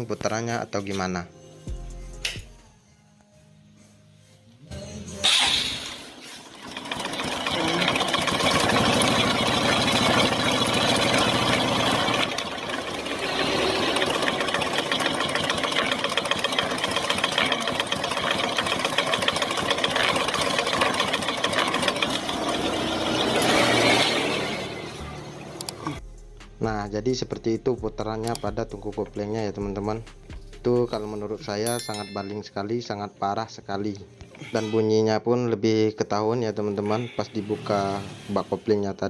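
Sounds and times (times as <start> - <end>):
harsh metallic rattling: 5.8 - 24.6
motorcycle engine idling: 6.4 - 23.4.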